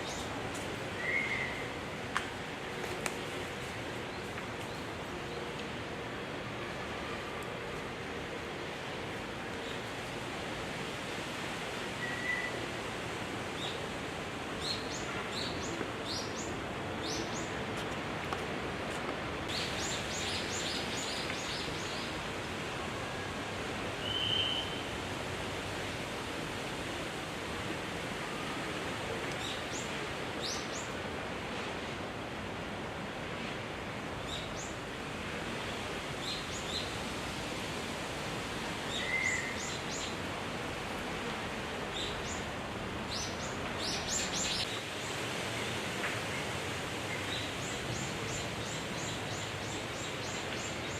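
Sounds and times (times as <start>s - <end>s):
steady rushing background noise: 0.0s - 12.0s.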